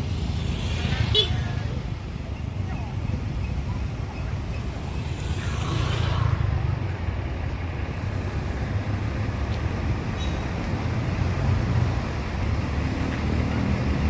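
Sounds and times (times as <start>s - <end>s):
road traffic rumble: 0.0s - 14.0s
vehicle passing: 3.6s - 10.0s.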